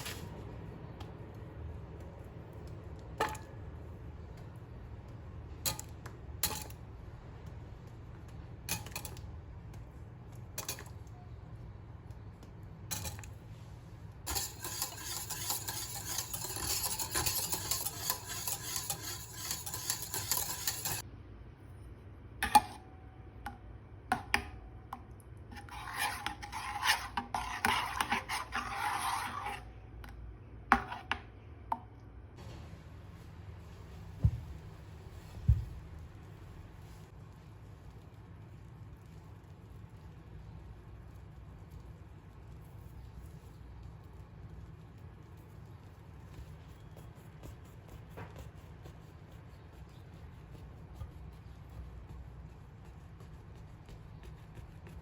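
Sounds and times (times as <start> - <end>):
stirring or scraping in bowl: 0.0 - 1.3, 12.9 - 13.5, 14.2 - 21.0, 25.5 - 31.3, 42.6 - 55.0
dishes and cutlery clinking: 14.3 - 21.0.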